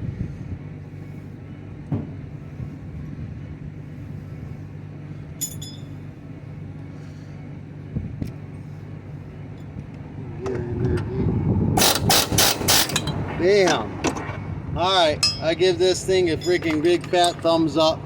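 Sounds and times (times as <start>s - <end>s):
steady low hum: 0.0s - 18.0s
ringing clink of metal on metal: 5.4s - 6.0s, 15.2s - 15.5s, 16.4s - 17.4s.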